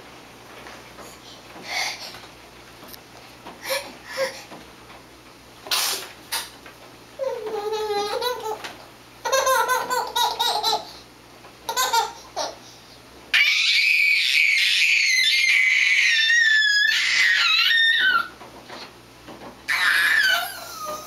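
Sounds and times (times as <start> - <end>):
young child laughing: 9.2 - 11.0, 19.7 - 21.0
child squealing: 13.3 - 18.3, 19.7 - 21.0.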